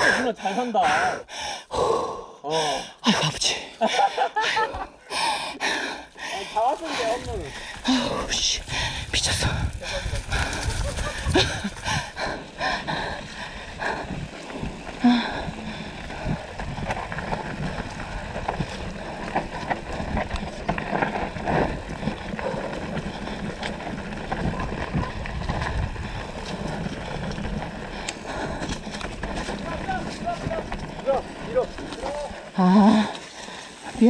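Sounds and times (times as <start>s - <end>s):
mountain bike rattling: 5.7s - 34.0s
tyres on dirt and gravel: 6.0s - 34.0s
wind on microphone: 7.2s - 31.2s.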